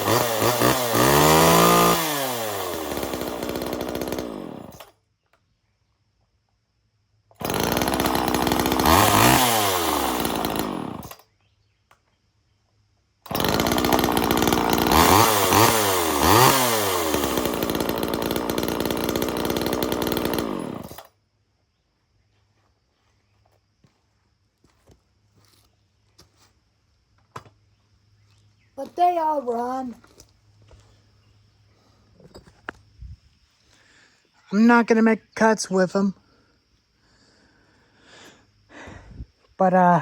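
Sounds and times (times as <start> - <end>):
chainsaw idling and revving: 0.0 - 4.9, 7.4 - 11.2, 13.3 - 21.1.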